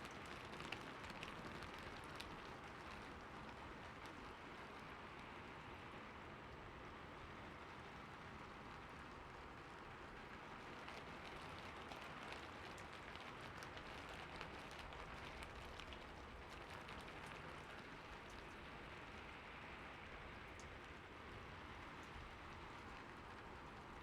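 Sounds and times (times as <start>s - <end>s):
raindrop ticks: 0.0s - 5.3s, 10.2s - 19.4s, 20.0s - 21.1s, 21.8s - 24.0s
rain falling: 0.0s - 24.0s.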